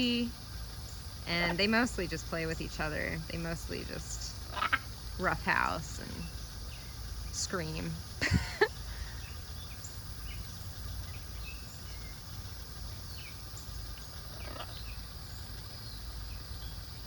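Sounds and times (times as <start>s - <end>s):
low background noise: 0.0s - 17.0s
parrot squawking: 4.4s - 4.9s
soft parrot chirps: 14.0s - 15.0s.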